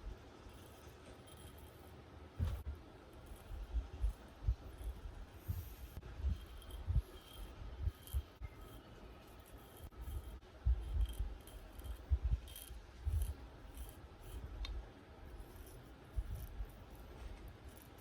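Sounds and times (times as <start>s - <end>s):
low handling bumps: 2.4s - 2.8s.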